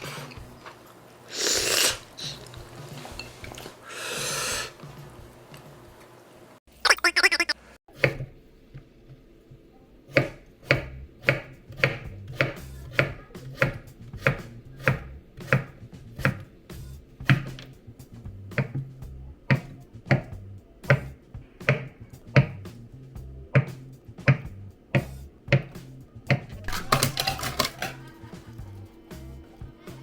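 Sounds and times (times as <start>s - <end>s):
music with snapping beat: 10.7s - 17.8s, 18.5s - 18.9s, 19.5s - 22.9s, 23.5s - 30.0s
plucked bass line: 18.1s - 19.5s, 22.3s - 26.7s.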